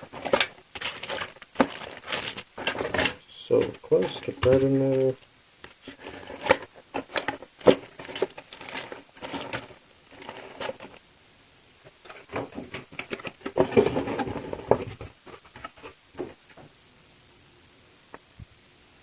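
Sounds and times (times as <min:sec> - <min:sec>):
parts knocking against cardboard box: 0:00.0 - 0:03.2, 0:05.9 - 0:10.9, 0:12.1 - 0:16.6
plastic bags crinkling: 0:00.0 - 0:05.2, 0:05.8 - 0:11.0.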